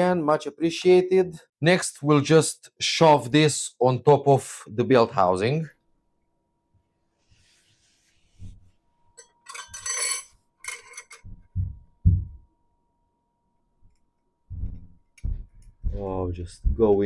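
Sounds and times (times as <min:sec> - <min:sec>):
metal parts clinking and scraping: 0:09.2 - 0:11.3
dull low knocks: 0:11.3 - 0:12.5, 0:14.5 - 0:17.0.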